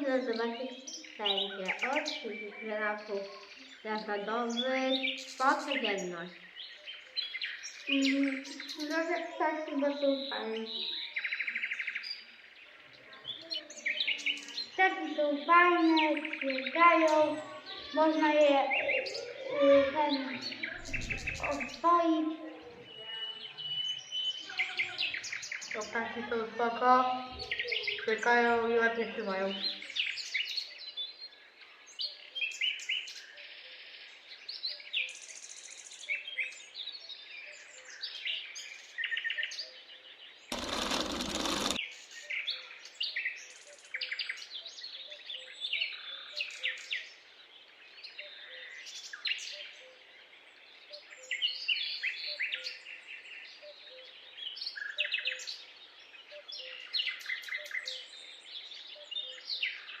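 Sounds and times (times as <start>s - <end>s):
songbirds chirping and trilling: 0.0s - 60.0s.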